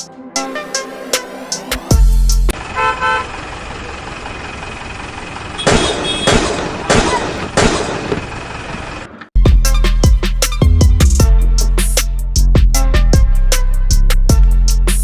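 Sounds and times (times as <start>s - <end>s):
vehicle engine rumbling: 1.8s - 9.4s.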